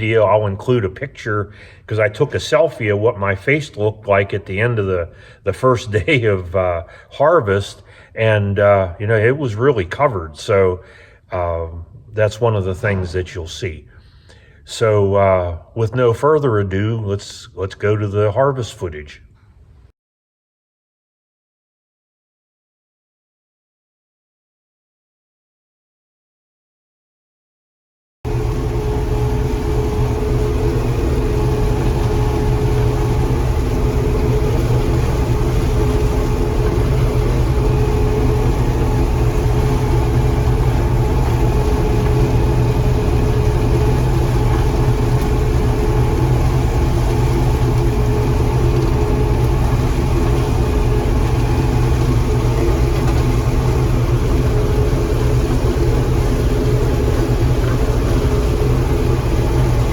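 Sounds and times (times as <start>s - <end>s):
combine harvester engine drone: 28.3s - 59.9s.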